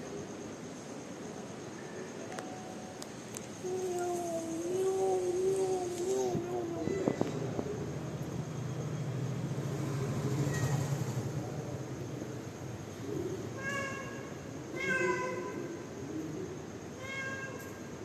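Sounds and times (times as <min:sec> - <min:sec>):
cat meowing: 0:13.6 - 0:15.6, 0:17.0 - 0:17.7.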